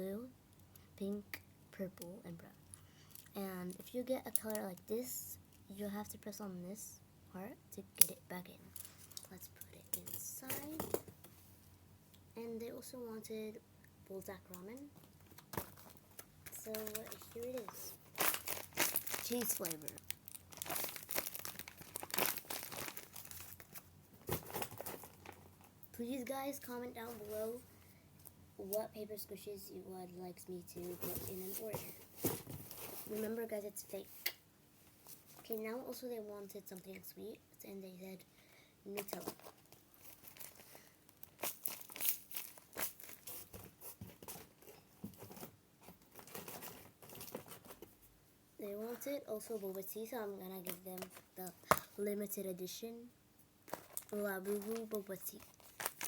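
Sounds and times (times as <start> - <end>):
paper crinkling and rustling: 15.3 - 25.7, 39.0 - 48.0, 53.7 - 56.0.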